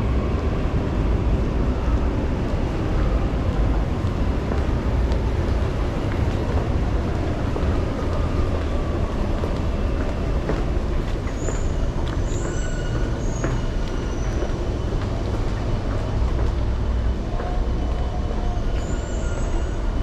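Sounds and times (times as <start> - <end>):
train wheels rumbling on track: 0.0 - 20.0
high wheel squeals: 11.2 - 14.9, 18.6 - 20.0.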